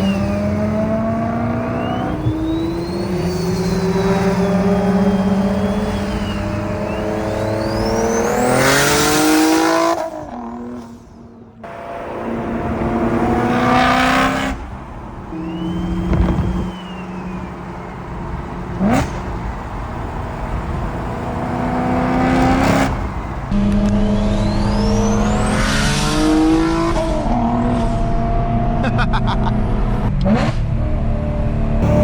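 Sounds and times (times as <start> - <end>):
car engine revving: 0.0 - 32.0
turbo whistle: 1.5 - 8.8, 15.3 - 18.0, 23.5 - 26.1.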